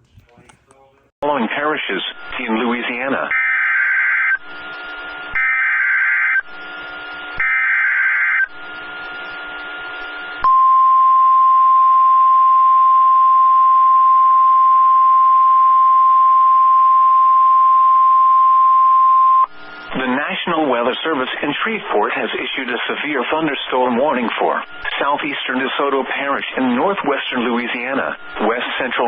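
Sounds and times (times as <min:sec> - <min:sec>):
steady warning alarm tone: 0:02.1 - 0:20.0, 0:23.3 - 0:29.0
rasping data bursts: 0:02.1 - 0:20.2, 0:22.5 - 0:29.0.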